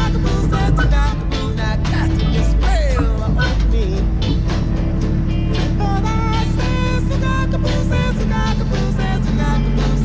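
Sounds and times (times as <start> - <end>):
background song with steady beat: 0.0 - 10.0.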